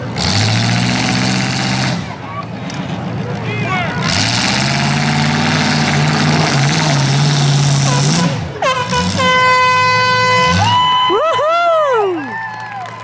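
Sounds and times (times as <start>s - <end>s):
car engines roaring: 0.0s - 13.0s
air horn blast: 7.8s - 10.8s.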